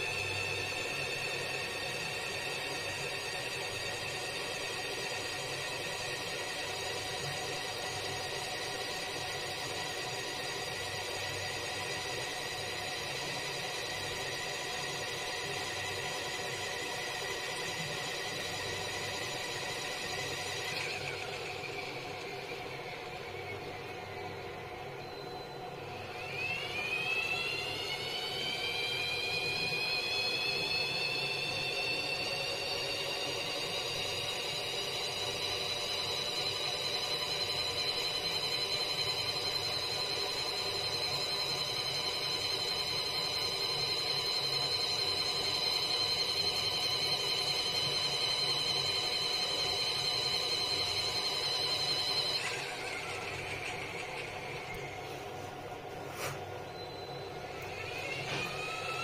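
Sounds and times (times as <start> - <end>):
washing machine motor whine: 0.0 - 59.0.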